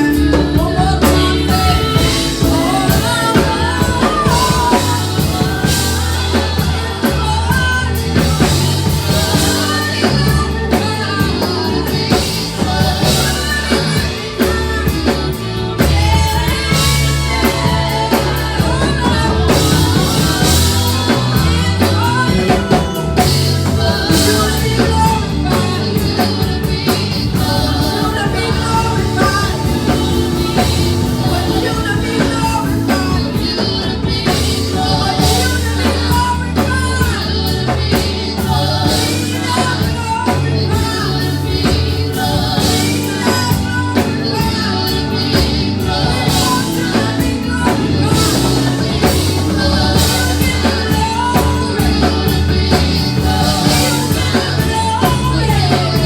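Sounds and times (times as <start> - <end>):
gospel band playing: 0.0 - 56.0
people singing: 0.0 - 56.0.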